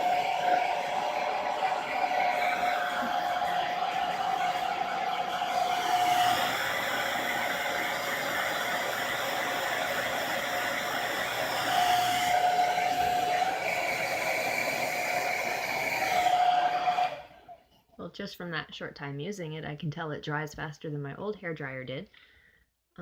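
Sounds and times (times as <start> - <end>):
hair dryer running: 0.0 - 17.6.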